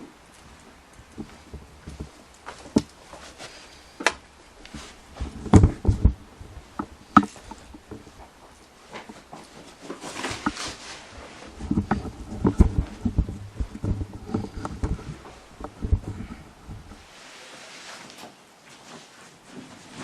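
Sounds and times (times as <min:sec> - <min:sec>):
short rustle: 0:00.1 - 0:20.0
knocks clicks and thumps: 0:00.4 - 0:03.2, 0:04.0 - 0:09.5, 0:10.2 - 0:17.1
heavy low thumps: 0:05.0 - 0:08.4, 0:11.5 - 0:17.1.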